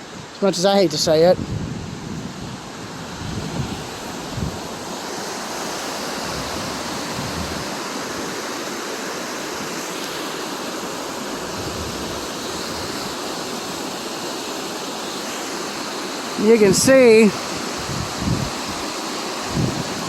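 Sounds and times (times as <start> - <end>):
wind buffeting microphone: 0.0 - 5.1, 6.0 - 8.4, 10.8 - 13.9, 16.5 - 20.0
floodwater rushing: 0.0 - 20.0.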